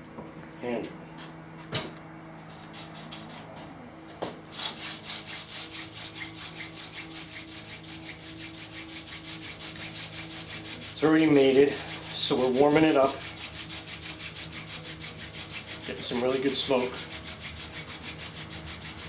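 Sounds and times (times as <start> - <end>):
wood rubbing on wood: 4.5 - 19.0.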